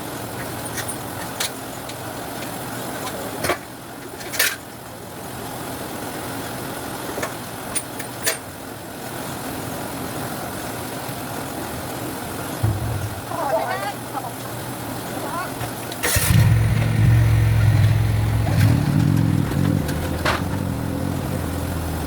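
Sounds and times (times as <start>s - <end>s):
sharp knocks: 12.6s - 13.2s, 16.3s - 20.8s
sorting machine running: 16.1s - 21.7s.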